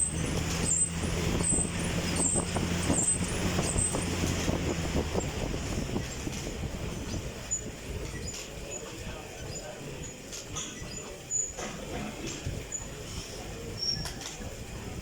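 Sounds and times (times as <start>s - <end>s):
low hum: 0.0s - 8.4s
exercise bike fan whirring: 0.0s - 15.0s.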